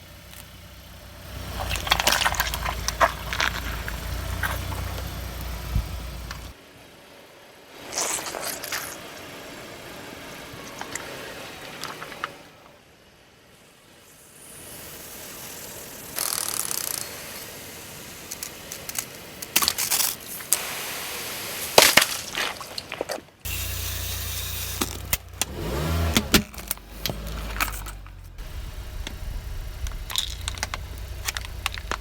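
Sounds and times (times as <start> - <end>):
car engine running: 0.0 - 7.2, 23.5 - 32.0
tyres crushing objects: 1.4 - 5.6, 24.7 - 28.3, 29.0 - 32.0.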